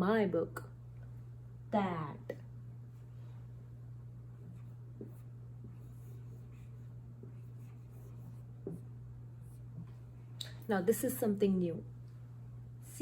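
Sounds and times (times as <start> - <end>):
low hum: 0.0 - 13.0
pen writing: 4.4 - 8.9.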